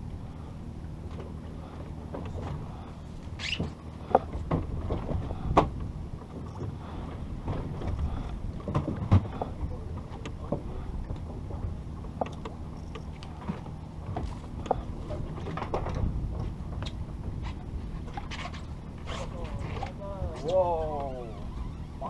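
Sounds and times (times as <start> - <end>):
boat engine humming: 0.0 - 22.0
sharp knocks and clicks: 12.1 - 14.8.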